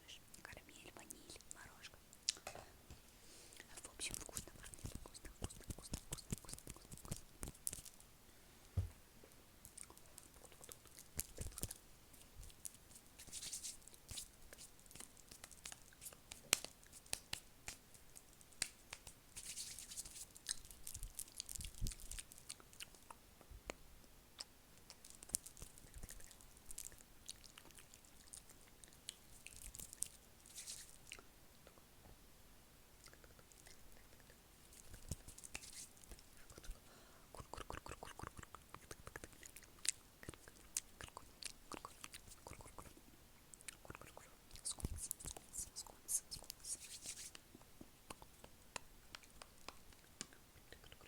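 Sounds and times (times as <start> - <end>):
wet mouth clicks and smacks: 4.1 - 8.0, 9.7 - 13.4, 37.4 - 43.0, 48.1 - 51.0.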